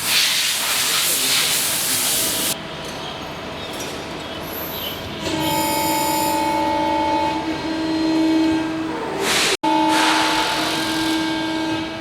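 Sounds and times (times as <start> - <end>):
machine whine: 5.2 - 12.0.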